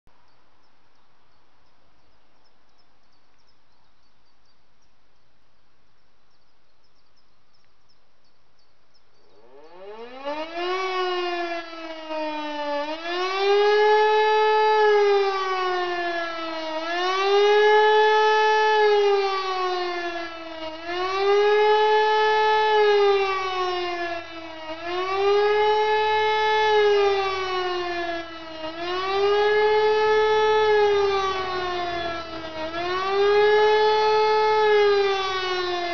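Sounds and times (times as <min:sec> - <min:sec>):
motor siren rising and falling: 0:09.3 - 0:35.9.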